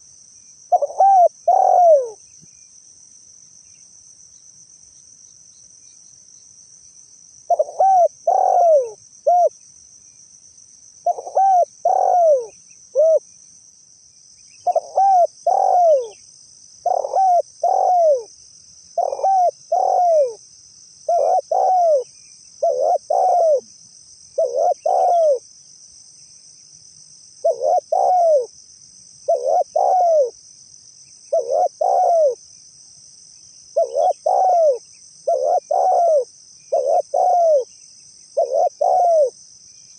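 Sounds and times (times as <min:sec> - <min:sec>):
dove cooing: 0:00.7 - 0:02.2, 0:07.5 - 0:09.5, 0:11.0 - 0:13.2, 0:14.6 - 0:16.2, 0:16.8 - 0:18.3, 0:19.0 - 0:20.4, 0:21.1 - 0:23.7, 0:24.4 - 0:25.4, 0:27.4 - 0:28.5, 0:29.3 - 0:30.4, 0:31.3 - 0:32.4, 0:33.8 - 0:37.7, 0:38.4 - 0:39.4.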